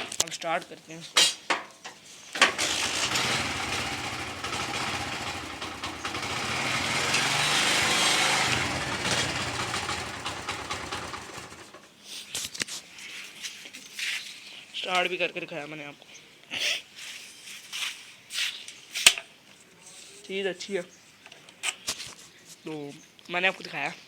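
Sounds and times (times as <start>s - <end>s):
motorcycle engine starting and revving: 2.4s - 11.9s.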